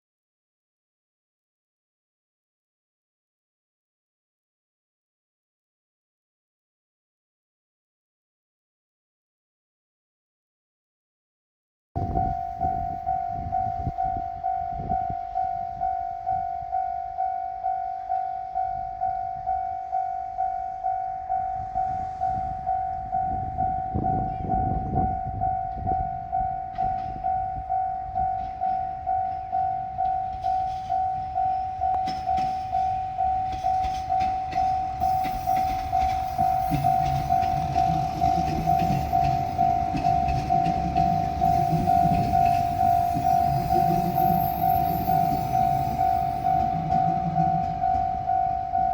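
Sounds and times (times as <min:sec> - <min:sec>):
diesel train rumble and rail clatter: 0:12.0 - 0:48.9
level crossing bell ringing: 0:12.2 - 0:48.9.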